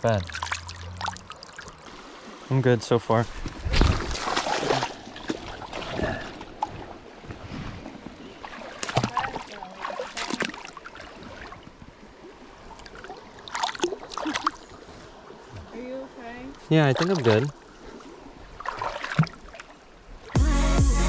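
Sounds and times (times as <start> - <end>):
water sloshing and splashing: 0.0 - 20.3
stream water running: 0.0 - 20.4.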